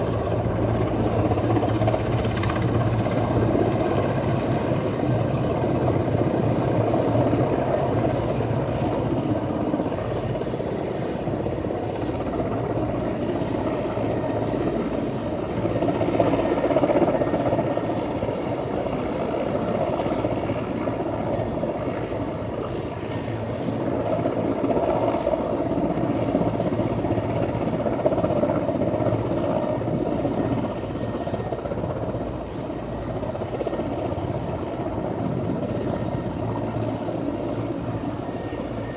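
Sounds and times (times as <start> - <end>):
helicopter rotor and engine: 0.0 - 38.9.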